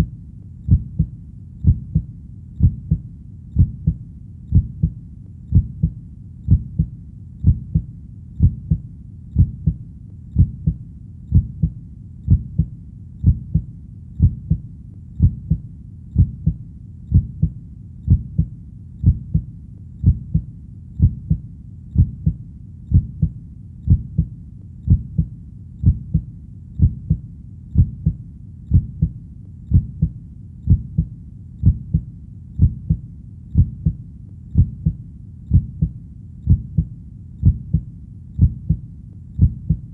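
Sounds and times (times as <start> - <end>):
faint low rumble: 0.0 - 39.9
heartbeat thumps: 0.0 - 39.9.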